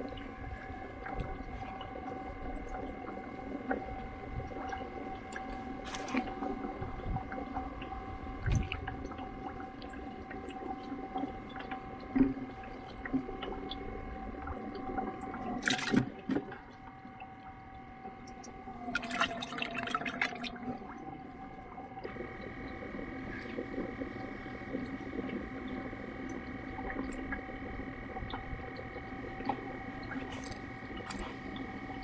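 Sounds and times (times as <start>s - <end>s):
high-pitched hum: 0.0s - 32.0s
water splashing: 18.8s - 20.9s.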